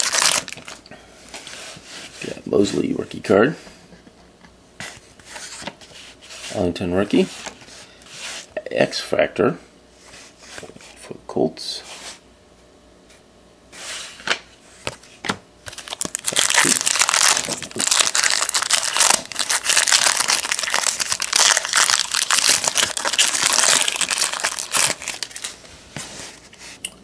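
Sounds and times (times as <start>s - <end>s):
foil wrapper tearing and crinkling: 0.0s - 0.8s, 15.7s - 25.6s.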